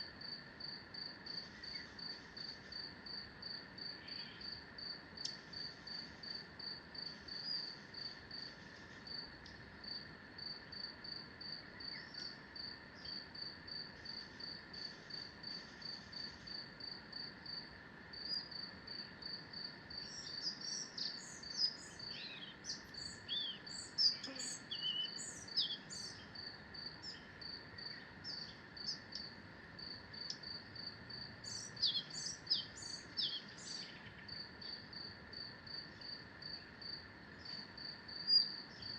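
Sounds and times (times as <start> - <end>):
songbirds singing: 1.3 - 9.6, 11.7 - 12.4, 13.0 - 13.4, 18.2 - 35.0, 35.8 - 38.9.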